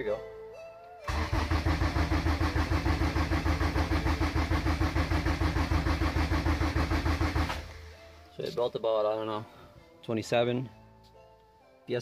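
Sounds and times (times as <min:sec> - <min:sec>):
engine cranking on starter motor: 0:01.1 - 0:07.7.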